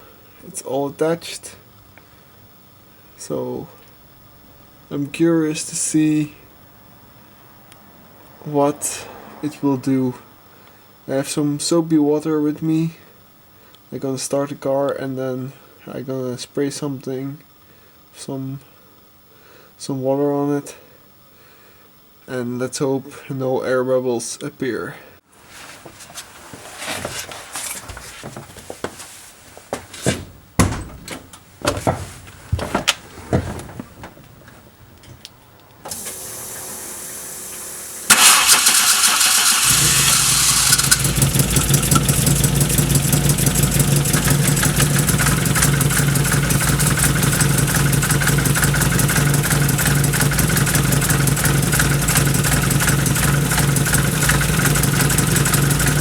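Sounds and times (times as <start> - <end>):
car engine starting and idling: 35.8 - 56.0.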